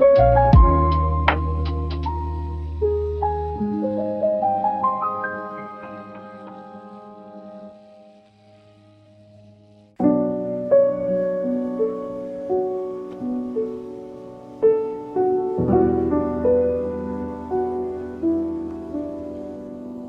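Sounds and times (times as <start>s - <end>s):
trip-hop music: 0.1s - 2.8s, 5.1s - 8.2s.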